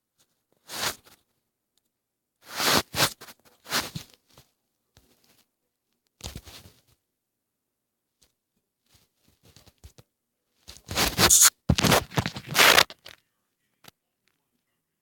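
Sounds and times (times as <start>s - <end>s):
scraping and rustling: 10.7s - 13.2s.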